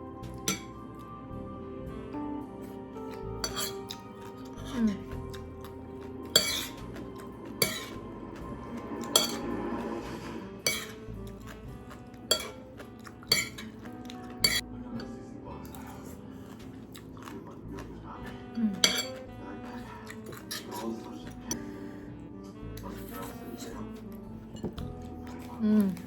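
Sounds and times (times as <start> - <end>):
utensils knocking against a bowl: 6.4 - 8.0, 9.0 - 9.5, 10.7 - 11.0, 12.3 - 12.7, 13.3 - 13.8.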